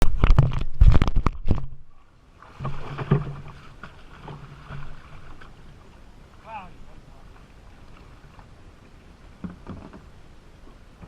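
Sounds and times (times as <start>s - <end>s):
knocks and thumps on a boat: 0.0s - 5.6s, 9.2s - 11.0s.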